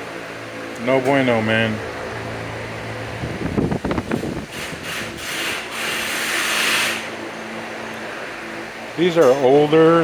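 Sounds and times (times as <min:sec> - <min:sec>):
scraping and rubbing: 0:04.5 - 0:07.1.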